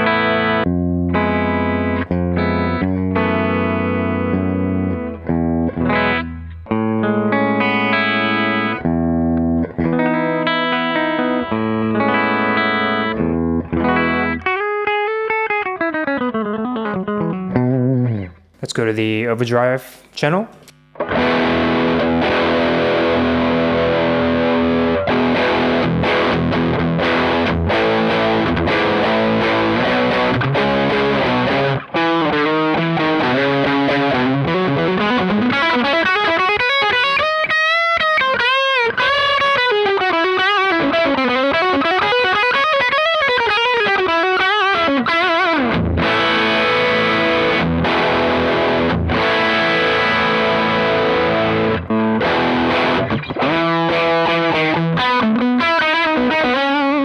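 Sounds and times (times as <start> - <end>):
distorted electric guitar: 0.0 - 18.7, 19.8 - 57.0.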